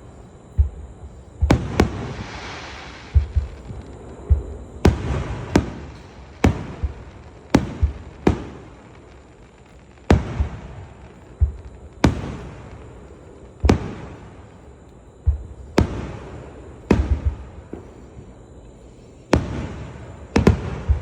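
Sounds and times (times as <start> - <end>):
deep firework thumps: 0.5 - 9.4, 10.0 - 14.6, 15.2 - 18.1, 19.3 - 21.0
firework shells bursting: 1.4 - 18.1.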